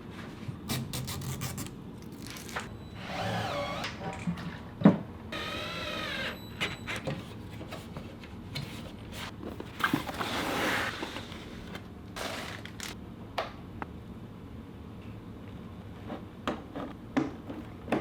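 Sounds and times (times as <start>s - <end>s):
rustling of cables: 8.8s - 13.0s.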